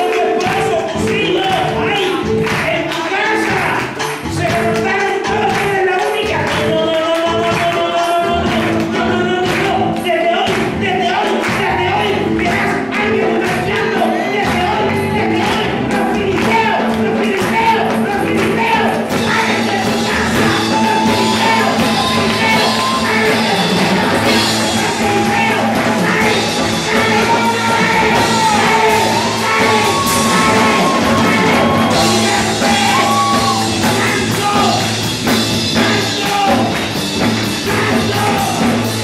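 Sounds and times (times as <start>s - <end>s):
live worship music with singing: 0.0s - 39.0s
percussion beat: 0.0s - 39.0s
voices shouting along: 20.2s - 34.8s.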